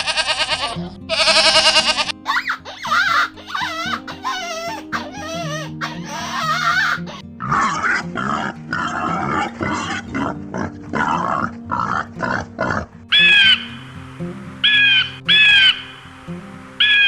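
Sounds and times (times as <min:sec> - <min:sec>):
crow cawing: 0:00.0 - 0:14.0, 0:14.6 - 0:16.0
background music: 0:00.8 - 0:17.0
pig grunting: 0:07.4 - 0:13.0.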